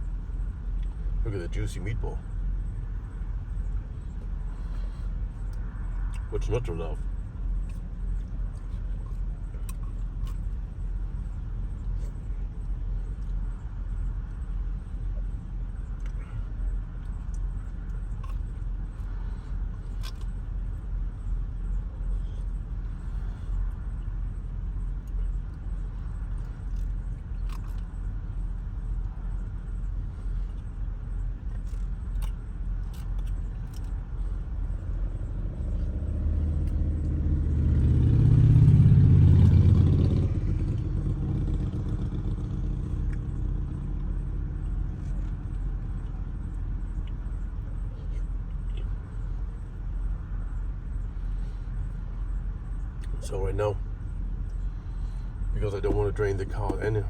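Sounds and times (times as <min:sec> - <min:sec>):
van engine idling: 0:00.0 - 0:57.0
vehicle passing by: 0:34.8 - 0:46.2.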